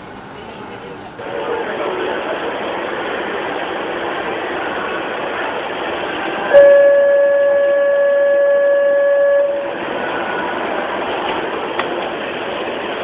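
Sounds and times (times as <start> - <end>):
train running noise: 0.0 - 13.0
train warning tone: 6.5 - 10.6.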